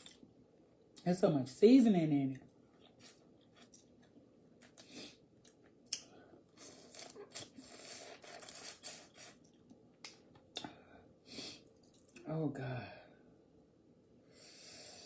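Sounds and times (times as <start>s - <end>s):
chewing: 2.8s - 10.7s.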